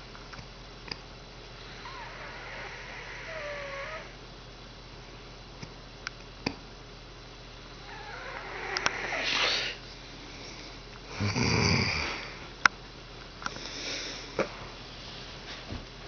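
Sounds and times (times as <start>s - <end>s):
person snoring: 7.9s - 9.8s, 11.1s - 12.5s
hissing breath: 8.7s - 12.5s, 13.5s - 14.4s.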